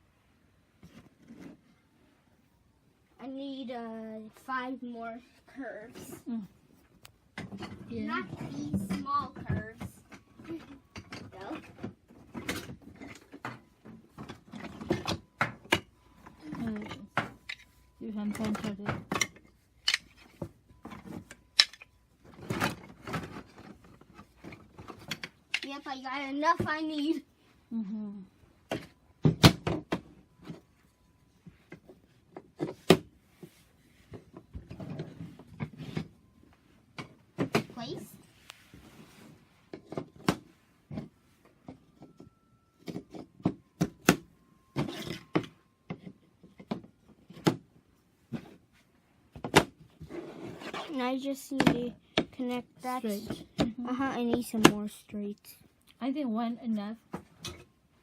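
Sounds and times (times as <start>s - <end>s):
wooden toy track pieces clacking: 19.2s - 20.3s, 21.6s - 21.9s, 25.0s - 25.9s
wooden track pieces knocking: 21.6s - 21.8s.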